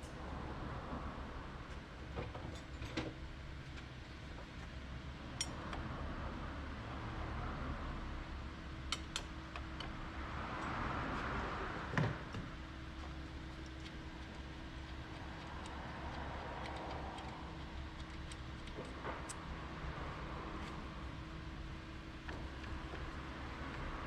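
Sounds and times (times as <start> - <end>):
steady low hum: 3.2 - 24.0.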